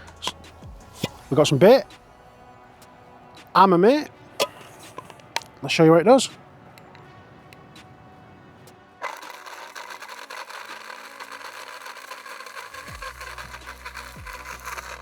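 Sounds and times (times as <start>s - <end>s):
grinder crunching and grating: 0.0s - 2.0s, 9.0s - 15.0s.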